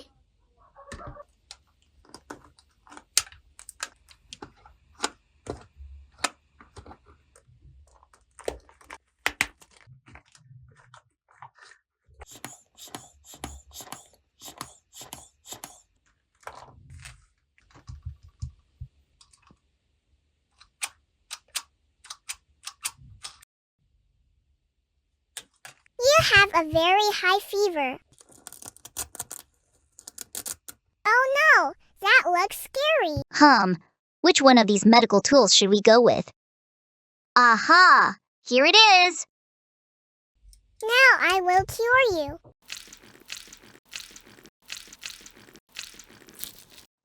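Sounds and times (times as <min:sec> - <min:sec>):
plastic toy pieces clicking on hard surface: 0:42.7 - 0:46.9.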